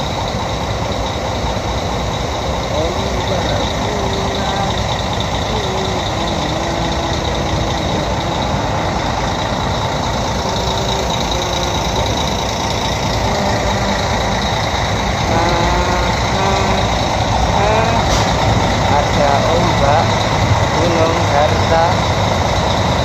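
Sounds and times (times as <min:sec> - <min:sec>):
constant high whine: 0:00.0 - 0:23.0
engine drone and rumble: 0:00.0 - 0:23.0
faint voices: 0:02.6 - 0:22.2.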